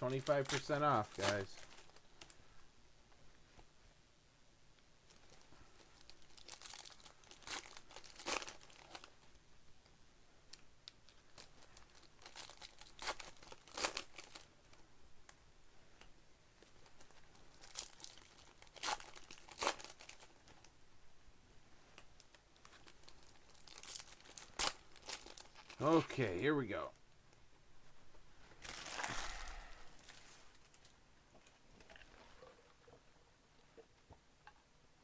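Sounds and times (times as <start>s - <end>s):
wrappers torn and crinkled: 0.1s - 2.4s, 5.1s - 9.4s, 10.5s - 14.5s, 16.6s - 20.7s, 22.2s - 26.1s, 28.6s - 31.0s.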